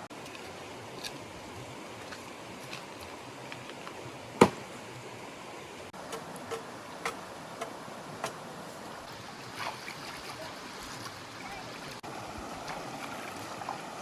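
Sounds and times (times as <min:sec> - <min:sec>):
stream water rushing: 0:00.0 - 0:14.0.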